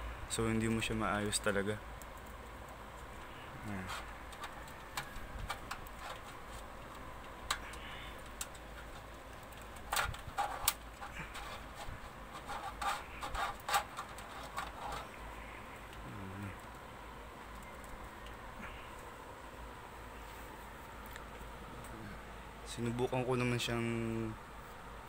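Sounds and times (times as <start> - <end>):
cables clicking and rustling: 0.4 - 19.2, 20.2 - 22.1.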